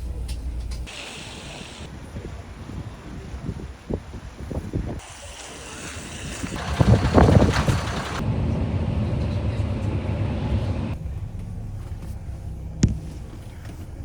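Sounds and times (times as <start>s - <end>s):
wind buffeting microphone: 1.4s - 8.2s.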